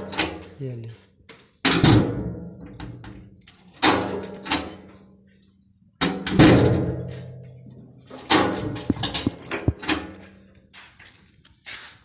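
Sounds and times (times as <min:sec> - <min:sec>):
steel gate clanging shut: 0:03.5 - 0:04.8.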